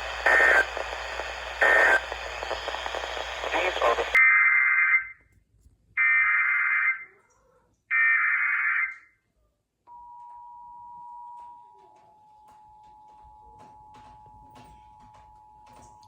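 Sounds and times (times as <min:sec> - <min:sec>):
data tone bursts: 0:00.0 - 0:04.2.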